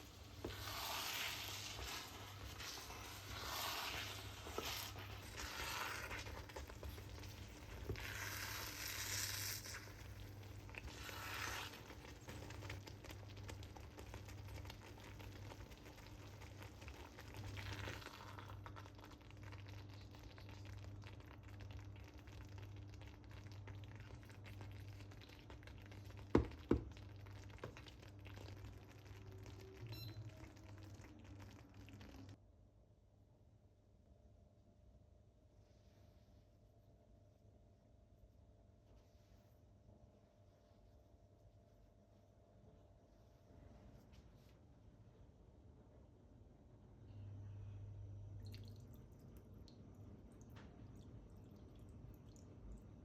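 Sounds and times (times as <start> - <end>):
food sizzling in a pan: 0.0 - 21.2.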